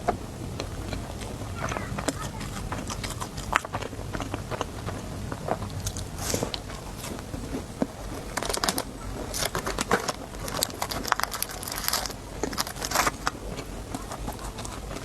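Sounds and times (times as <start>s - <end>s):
plastic packaging crinkling: 8.2s - 15.0s.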